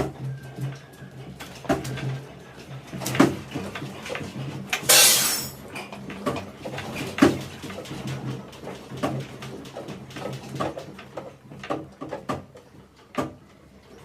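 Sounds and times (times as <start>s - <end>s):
dishes clattering: 4.8s - 5.6s
loud crash: 4.9s - 5.6s.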